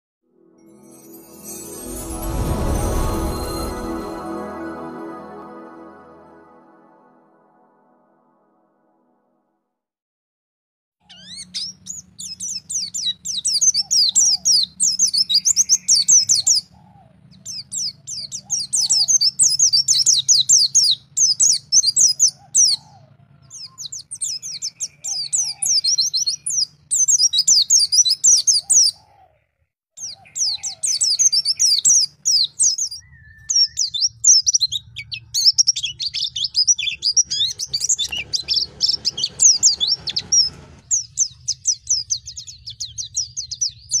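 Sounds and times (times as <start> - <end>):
bird twittering song: 30.0 - 44.0.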